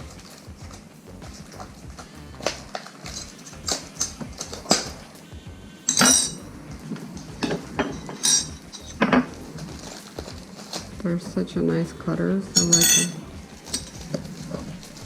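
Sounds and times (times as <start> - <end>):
metal cookie cutters clinking: 5.9 - 6.4, 7.1 - 11.0, 12.5 - 15.0.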